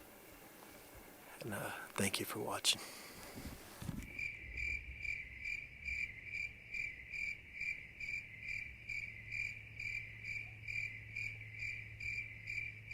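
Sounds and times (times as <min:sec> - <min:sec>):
faint low hum: 0:00.0 - 0:12.9
cricket chirping: 0:03.9 - 0:12.9.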